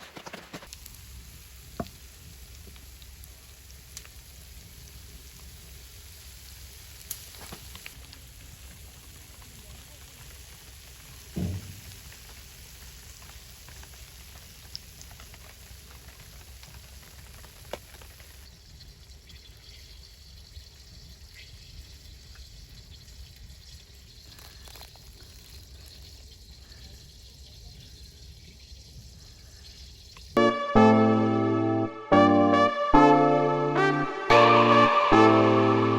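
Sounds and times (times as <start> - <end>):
fire crackles: 0.0 - 30.4
food cooking over wood fire: 0.0 - 30.4
brief falling tone: 30.4 - 35.9.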